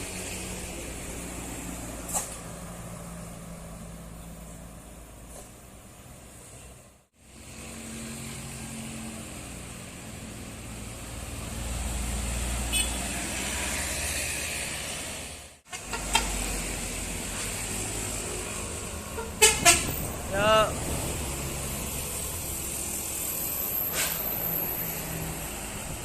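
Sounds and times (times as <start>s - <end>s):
bus diesel engine under load: 0.0s - 26.0s.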